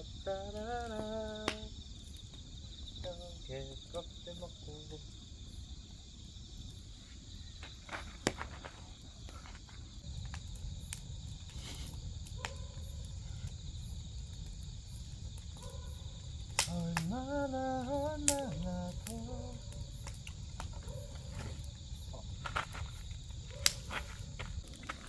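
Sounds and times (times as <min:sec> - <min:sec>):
crickets chirring: 0:00.0 - 0:25.0
firewood crackling and popping: 0:00.0 - 0:25.0
person humming: 0:16.7 - 0:19.8.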